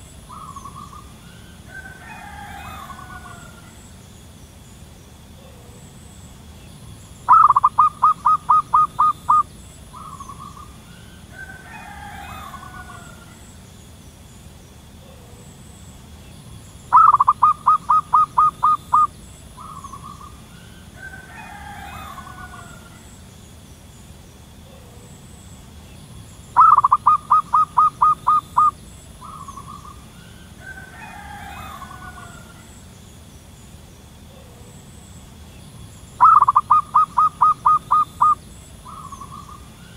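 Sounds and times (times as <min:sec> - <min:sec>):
faint bird call: 0:00.0 - 0:04.0, 0:07.3 - 0:13.6, 0:16.9 - 0:23.2, 0:26.6 - 0:32.9, 0:36.2 - 0:39.9
dove staccato cooing: 0:07.2 - 0:13.4, 0:16.8 - 0:23.1, 0:26.5 - 0:32.7, 0:36.1 - 0:39.9.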